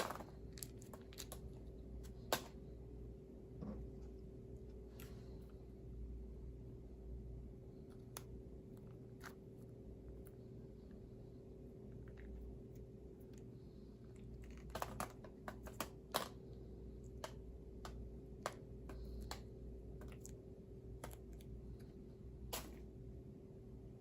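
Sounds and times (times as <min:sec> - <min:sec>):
low electrical hum: 0:00.0 - 0:24.0.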